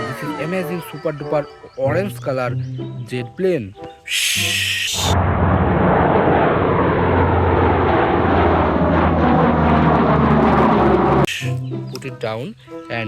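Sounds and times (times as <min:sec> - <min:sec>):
jet airliner engine drone: 0:04.1 - 0:11.6.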